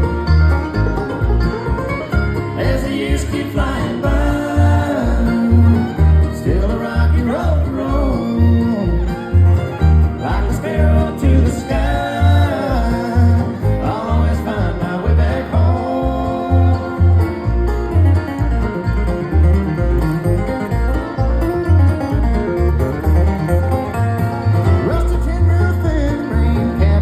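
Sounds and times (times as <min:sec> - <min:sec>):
bluegrass band playing: 0:00.0 - 0:27.0
booming bass notes: 0:00.0 - 0:27.0
person singing: 0:02.6 - 0:09.1, 0:10.2 - 0:17.3.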